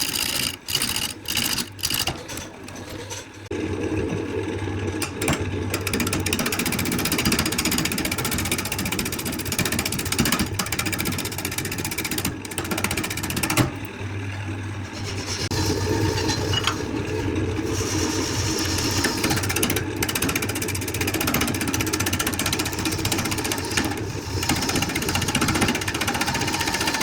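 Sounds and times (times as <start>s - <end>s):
power tool motor buzzing: 0.0s - 2.0s.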